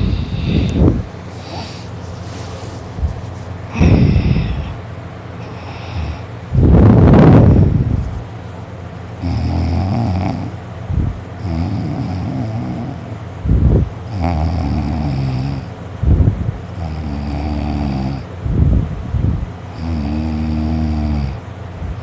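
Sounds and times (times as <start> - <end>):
person snoring loudly: 0.0 - 1.9, 3.7 - 4.8, 9.2 - 10.6, 11.4 - 13.2, 14.1 - 15.7, 16.7 - 18.3, 19.7 - 21.4.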